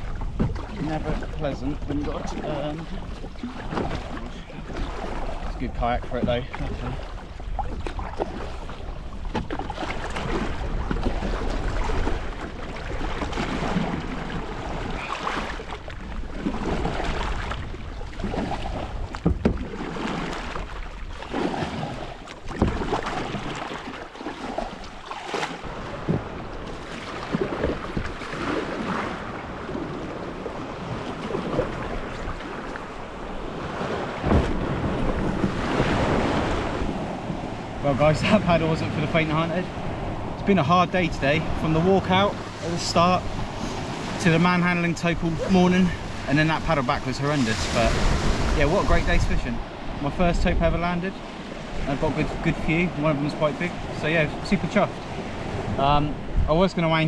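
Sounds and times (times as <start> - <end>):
water splashing around kayak hull: 0.0 - 57.0
wind buffeting microphone: 25.6 - 53.1, 53.7 - 57.0.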